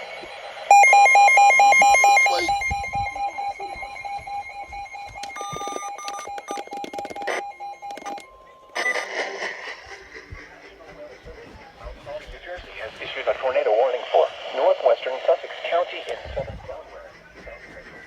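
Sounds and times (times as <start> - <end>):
short steady alert tone: 0.7 - 8.5
electronic alert beeps: 0.7 - 9.1.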